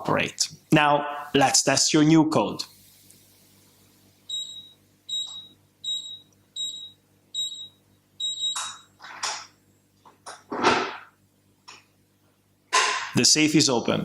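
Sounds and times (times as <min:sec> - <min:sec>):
keypad beeps: 0:04.3 - 0:08.9.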